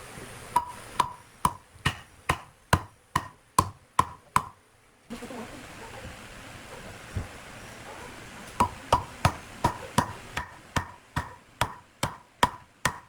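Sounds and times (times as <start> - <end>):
hammer knocking: 0.6 - 4.6, 8.6 - 13.0.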